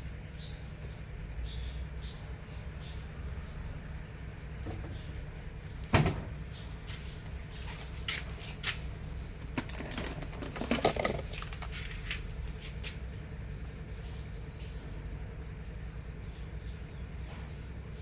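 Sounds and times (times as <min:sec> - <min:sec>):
knocks and clicks of hard parts: 0:05.8 - 0:06.4, 0:09.4 - 0:11.7.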